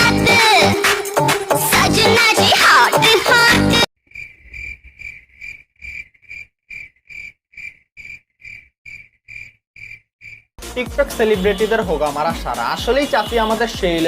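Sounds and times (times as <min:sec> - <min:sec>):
music: 0:00.0 - 0:03.9, 0:10.6 - 0:14.0
cricket chirping: 0:04.1 - 0:10.5.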